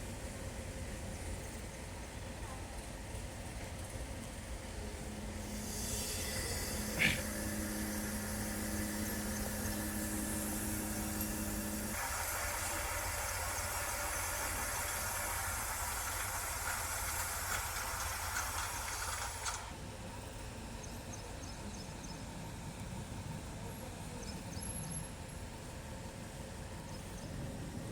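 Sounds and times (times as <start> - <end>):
heavy machinery rumbling: 5.1 - 19.6
loud hiss: 5.4 - 19.6.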